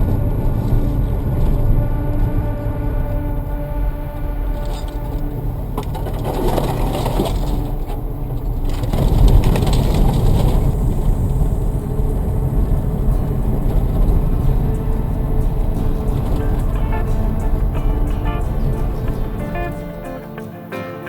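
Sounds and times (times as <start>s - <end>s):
tyres crunching over ground: 0.0s - 20.3s
vehicle engine and tyres rumbling: 0.0s - 20.3s.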